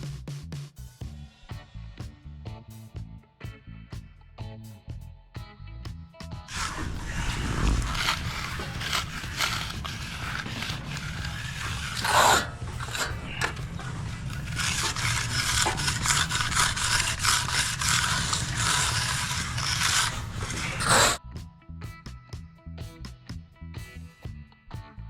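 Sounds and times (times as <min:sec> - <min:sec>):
hand tool scraping concrete: 0:06.5 - 0:21.2.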